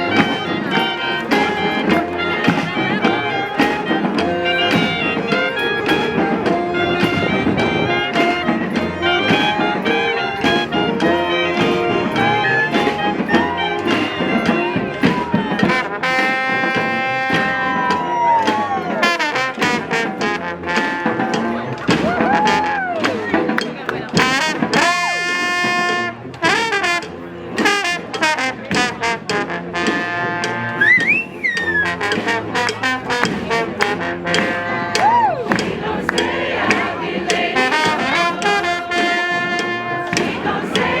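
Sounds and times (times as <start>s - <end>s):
horn long high note: 0.0s - 18.1s
horn band playing afrobeat: 0.0s - 41.0s
steady beat: 0.0s - 41.0s.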